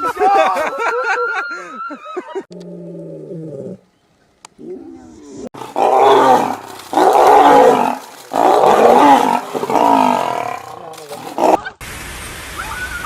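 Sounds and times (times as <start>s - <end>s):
large animal roaring: 4.6s - 11.6s.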